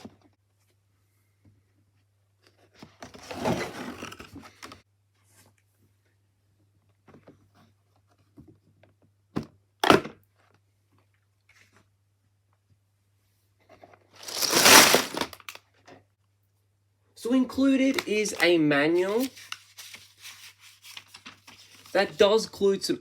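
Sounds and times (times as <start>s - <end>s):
cardboard box scraping rustle: 3.2s - 4.4s, 14.2s - 15.3s.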